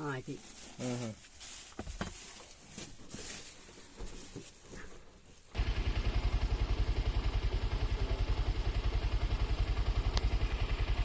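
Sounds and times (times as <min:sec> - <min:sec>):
small engine running: 0:05.5 - 0:11.0.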